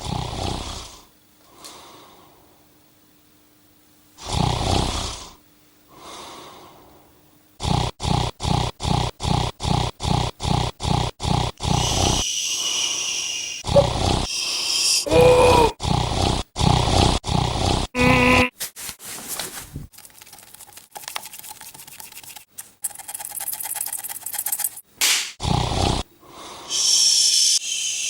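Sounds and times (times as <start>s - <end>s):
person snoring: 0.0s - 1.1s, 4.2s - 5.4s, 7.6s - 18.5s, 25.4s - 28.0s.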